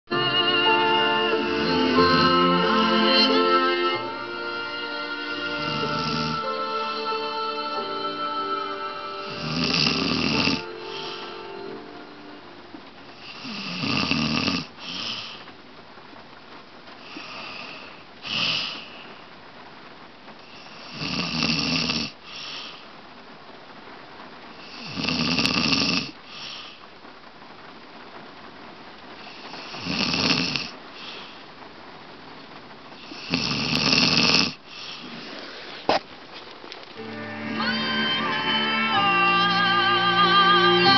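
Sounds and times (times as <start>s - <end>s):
woman snoring: 5.4s - 6.6s, 9.2s - 11.6s, 13.2s - 15.3s, 20.5s - 22.2s, 24.6s - 26.2s, 29.6s - 31.1s, 33.0s - 35.1s.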